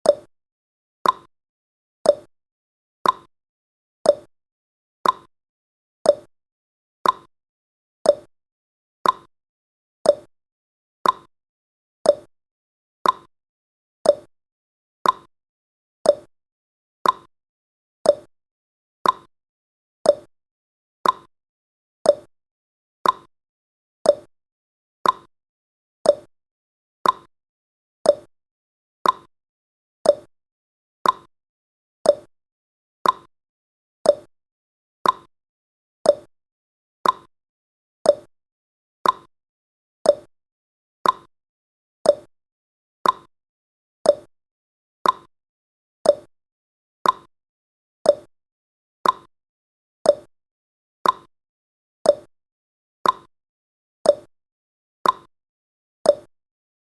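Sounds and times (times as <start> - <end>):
timer ticking: 0.0 - 0.3, 1.0 - 1.3, 2.1 - 2.3, 3.0 - 3.3, 4.1 - 4.3, 5.0 - 5.3, 6.1 - 6.3, 7.0 - 7.3, 8.1 - 8.3, 9.0 - 9.3, 10.1 - 10.3, 11.0 - 11.3, 12.1 - 12.3, 13.0 - 13.3, 14.1 - 14.3, 15.0 - 15.3, 16.1 - 16.3, 17.0 - 17.3, 18.1 - 18.3, 19.0 - 19.3, 20.1 - 20.3, 21.0 - 21.3, 22.1 - 22.3, 23.0 - 23.3, 24.1 - 24.3, 25.0 - 25.3, 26.0 - 26.3, 27.0 - 27.3, 28.0 - 28.3, 29.0 - 29.3, 30.0 - 30.3, 31.0 - 31.3, 32.0 - 32.3, 33.0 - 33.3, 34.0 - 34.3, 35.0 - 35.3, 36.0 - 36.3, 37.0 - 37.3, 38.1 - 38.3, 39.0 - 39.3, 40.1 - 40.3, 41.0 - 41.3, 42.1 - 42.3, 43.0 - 43.3, 44.1 - 44.3, 45.0 - 45.3, 46.1 - 46.3, 47.0 - 47.3, 48.1 - 48.3, 49.0 - 49.3, 50.1 - 50.3, 51.0 - 51.3, 52.1 - 52.3, 53.0 - 53.3, 54.1 - 54.3, 55.0 - 55.3, 56.1 - 56.3.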